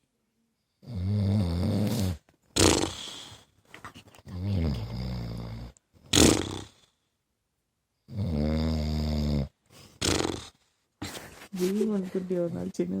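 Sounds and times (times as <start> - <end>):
man snoring: 0.8 - 3.4, 4.4 - 6.8, 8.1 - 10.6
puff of breath: 1.8 - 3.6.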